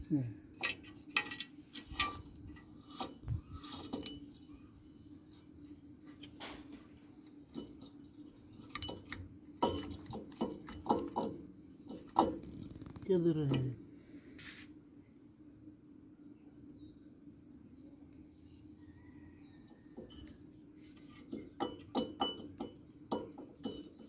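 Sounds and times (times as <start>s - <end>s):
metal tools clinking and knocking: 0.6s - 4.4s, 7.5s - 12.3s, 20.0s - 20.4s, 21.0s - 24.0s.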